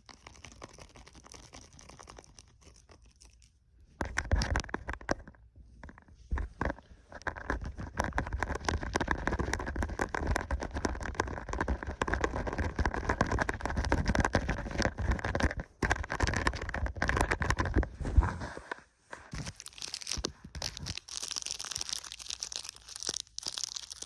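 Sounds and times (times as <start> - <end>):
rapid tapping and scratching: 0.0 - 3.4, 6.3 - 18.0.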